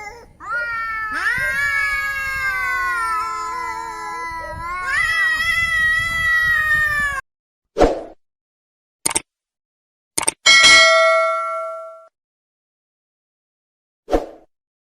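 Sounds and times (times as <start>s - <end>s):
cats yowling in a fight: 0.0s - 7.2s.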